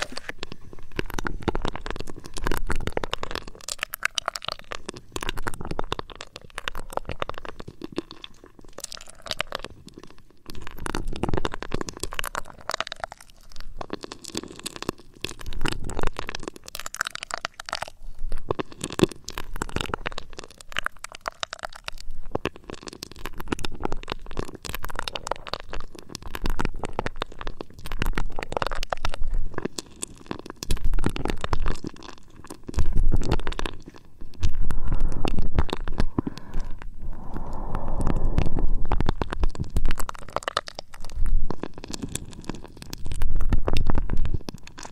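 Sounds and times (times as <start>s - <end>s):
scratching and rubbing on microphone: 0.0s - 3.6s
deep rumbling: 34.4s - 40.3s.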